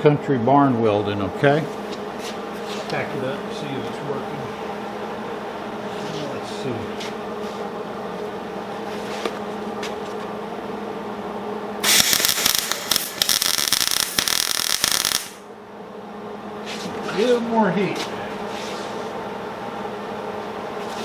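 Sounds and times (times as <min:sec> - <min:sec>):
welder humming: 0:11.7 - 0:15.5
crackling welding arc: 0:11.8 - 0:15.4.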